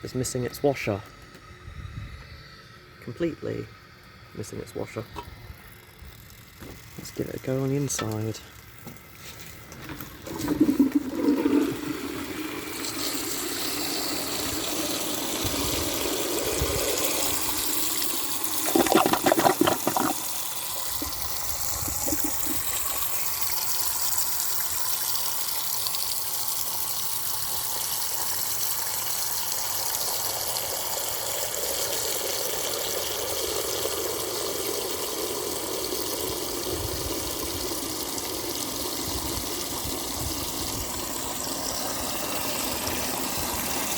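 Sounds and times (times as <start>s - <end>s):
water rushing: 10.2s - 17.6s, 18.6s - 23.0s
clattering knocks in pipes: 18.6s - 20.3s.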